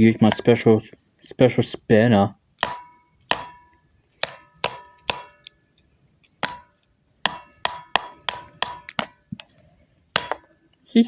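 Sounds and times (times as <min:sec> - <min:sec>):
metallic strikes ringing: 0:02.6 - 0:05.8, 0:06.4 - 0:09.4, 0:10.2 - 0:10.6.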